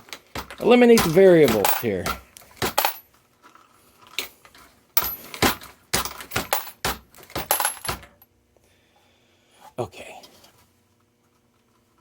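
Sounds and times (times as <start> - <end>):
brass cartridge cases clinking: 0.1 - 3.0.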